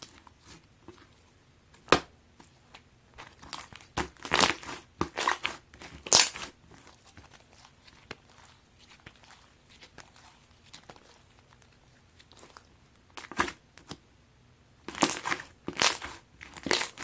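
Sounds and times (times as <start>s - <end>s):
slime squished by hand: 1.8s - 14.0s, 14.8s - 17.0s
slime crackling pops: 4.0s - 6.5s.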